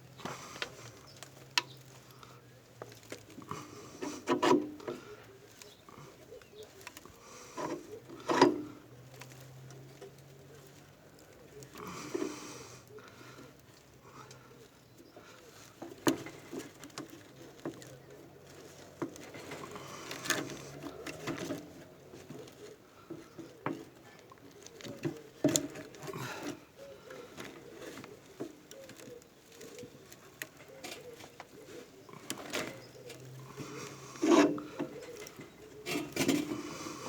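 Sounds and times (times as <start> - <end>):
metal clicks knocks and scrapes: 3.5 - 5.1, 7.5 - 8.8, 30.4 - 37.0.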